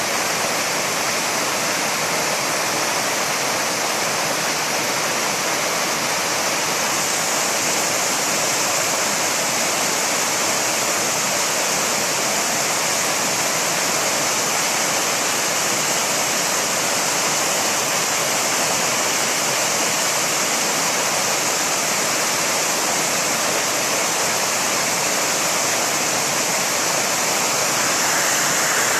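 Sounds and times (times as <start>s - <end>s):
waterfall rushing: 0.0s - 28.9s.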